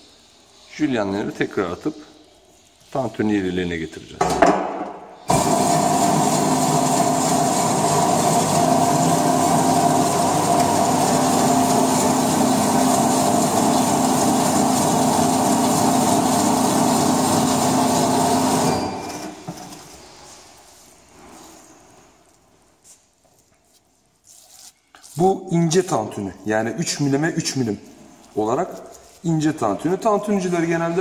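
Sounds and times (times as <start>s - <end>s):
dicing machine hum: 5.3s - 19.3s.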